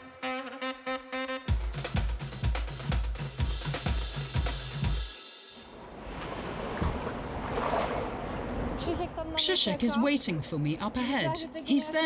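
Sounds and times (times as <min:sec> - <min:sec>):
drum kit beat: 0:01.2 - 0:05.7.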